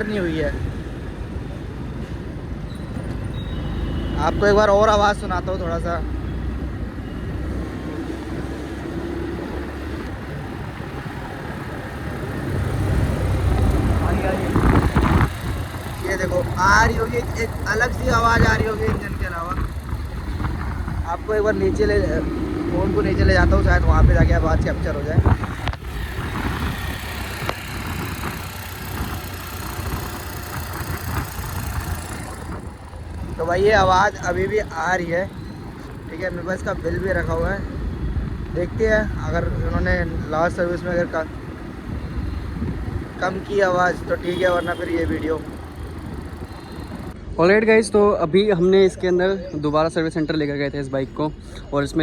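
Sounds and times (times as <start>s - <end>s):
motorcycle engine running: 12.6s - 21.4s, 22.0s - 37.6s, 43.8s - 47.1s
engine ticking: 25.3s - 37.6s.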